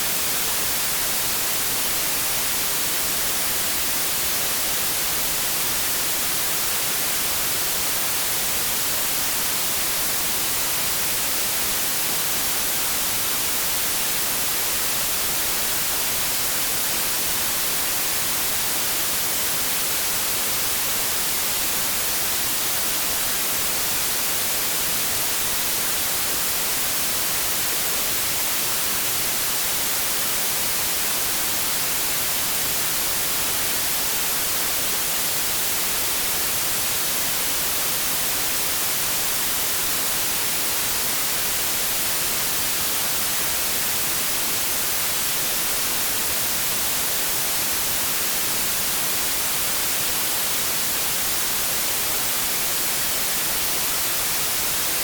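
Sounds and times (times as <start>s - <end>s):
white noise static hiss: 0.0s - 55.0s.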